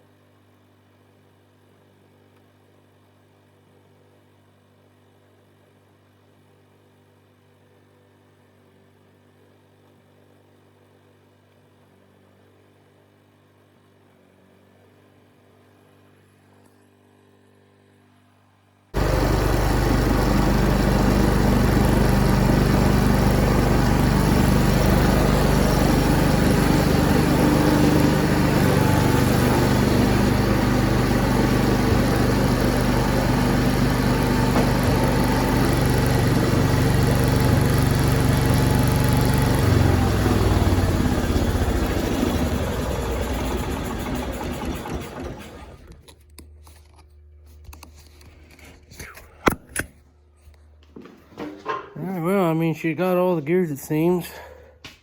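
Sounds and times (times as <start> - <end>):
tractor engine running: 19.0 - 46.1.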